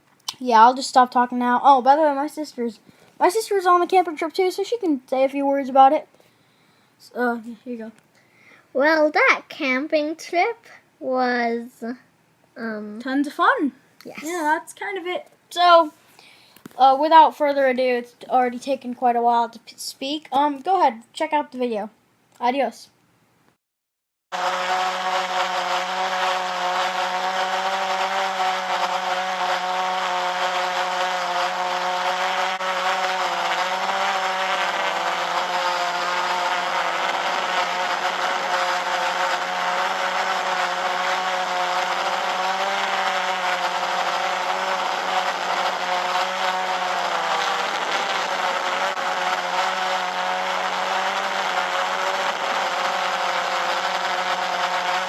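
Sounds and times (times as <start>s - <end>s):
drone propellers buzzing: 24.4s - 55.0s.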